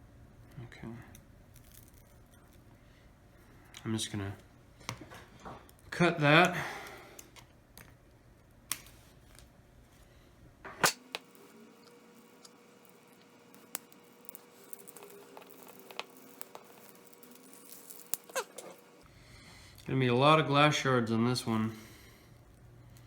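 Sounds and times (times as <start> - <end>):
tool clicking on cracked glass: 13.6 - 18.8.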